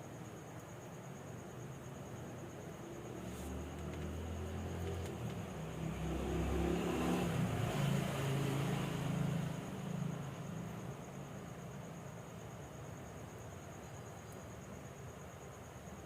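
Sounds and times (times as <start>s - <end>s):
passing vehicle engine drone: 3.0s - 10.8s.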